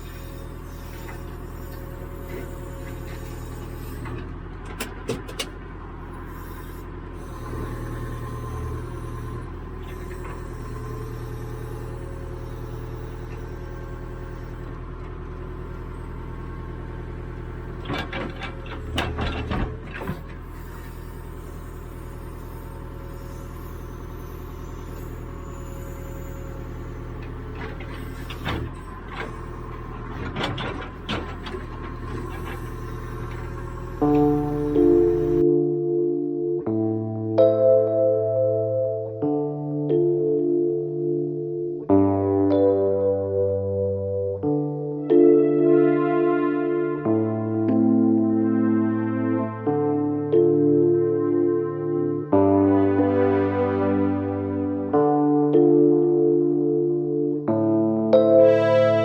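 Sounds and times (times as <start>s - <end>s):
diesel engine running: 0.0s - 35.4s, 44.8s - 55.0s.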